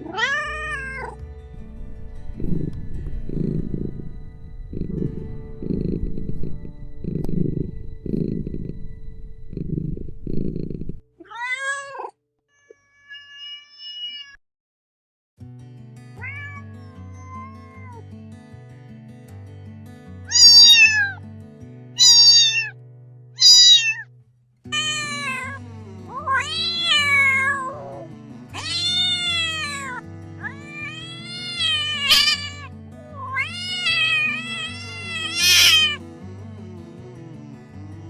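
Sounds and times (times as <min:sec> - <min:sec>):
cat meowing: 0:00.0 - 0:01.2, 0:11.2 - 0:14.4, 0:16.2 - 0:18.0, 0:20.3 - 0:21.2, 0:22.0 - 0:22.8, 0:23.4 - 0:24.1, 0:24.7 - 0:36.0
background music: 0:00.0 - 0:11.0, 0:24.7 - 0:38.0.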